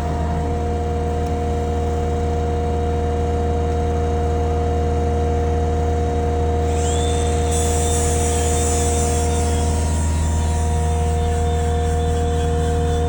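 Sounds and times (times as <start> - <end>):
engine humming: 0.0 - 13.0
high hiss: 6.7 - 13.0.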